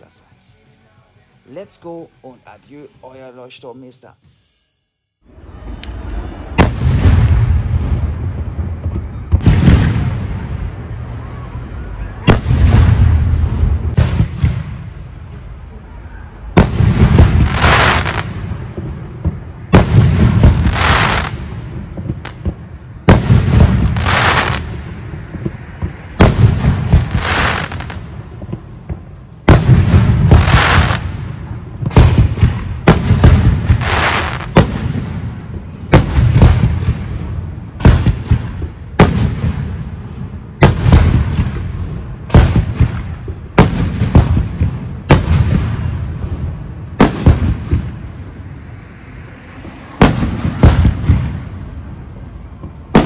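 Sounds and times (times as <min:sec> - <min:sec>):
continuous low rumble: 0:00.0 - 0:53.0
crackling hiss: 0:11.8 - 0:53.0.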